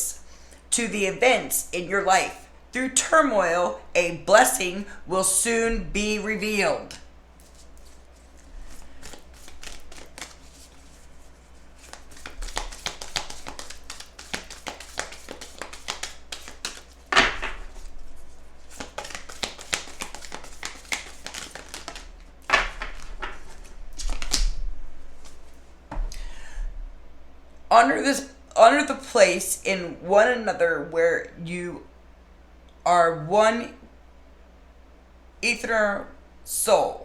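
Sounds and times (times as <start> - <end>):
cards shuffling clicks: 6.9 - 11.1, 11.8 - 17.9, 18.6 - 24.6
cards swishing: 7.4 - 24.6.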